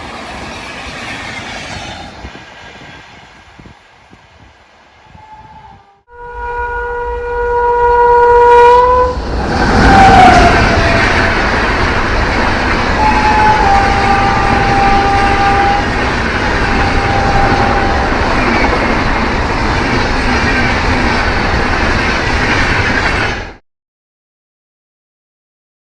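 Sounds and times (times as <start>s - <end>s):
train coaches rushing past: 0.0s - 5.2s, 8.4s - 23.6s
train horn: 5.0s - 12.0s, 12.8s - 18.8s.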